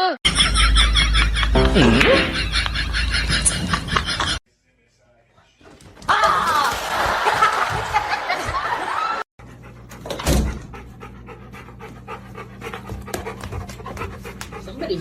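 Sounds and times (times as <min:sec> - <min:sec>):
dog panting: 0:09.4 - 0:15.0.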